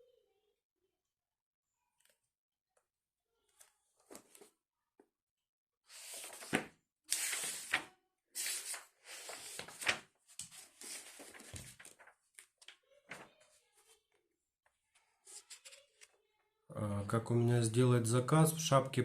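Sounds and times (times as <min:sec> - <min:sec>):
rustling and handling noises: 0:03.5 - 0:04.6, 0:05.9 - 0:16.4.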